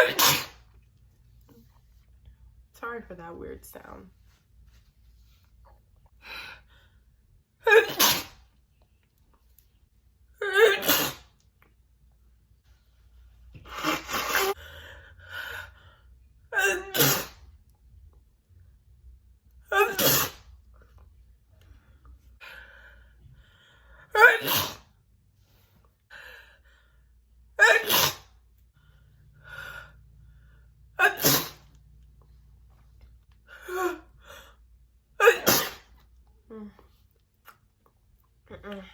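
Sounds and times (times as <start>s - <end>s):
woman sneezing: 0.0s - 0.6s, 7.6s - 8.4s, 10.4s - 11.3s, 16.6s - 17.4s, 19.7s - 20.5s, 24.2s - 24.9s, 27.6s - 28.3s, 31.0s - 31.7s, 35.2s - 36.0s.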